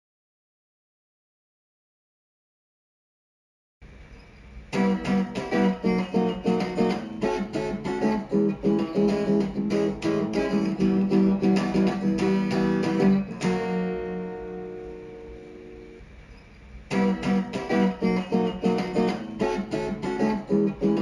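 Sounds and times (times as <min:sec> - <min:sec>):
electric guitar riff and chord: 0:04.7 - 0:16.1, 0:16.9 - 0:21.0.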